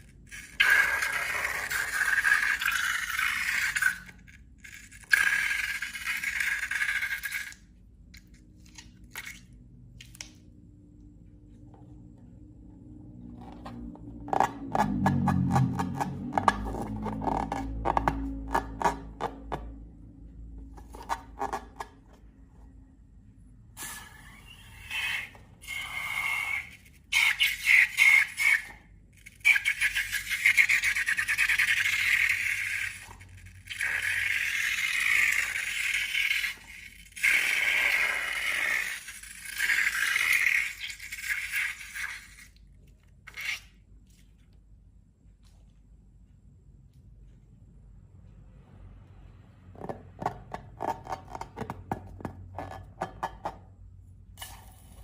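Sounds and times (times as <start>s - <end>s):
slime crackling and scraping: 13.4s - 19.5s.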